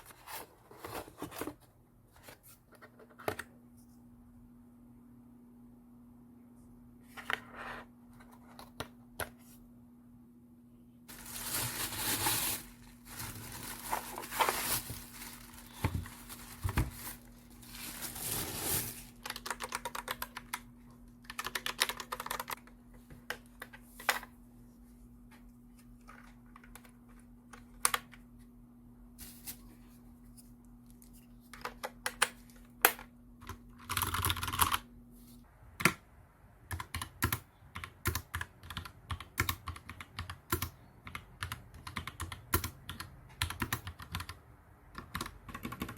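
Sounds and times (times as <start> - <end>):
faint steady hum: 0.0 - 45.9
packaging rustling: 11.1 - 19.5
keyboard keys clicking: 19.2 - 20.7, 21.3 - 22.6.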